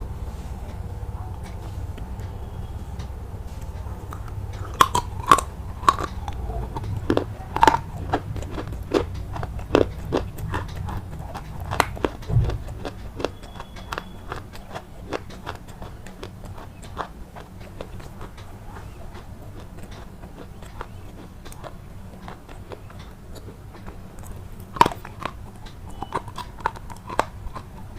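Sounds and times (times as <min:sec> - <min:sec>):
steady low rumble: 0:00.0 - 0:27.9
brittle crunching snaps: 0:03.7 - 0:27.9.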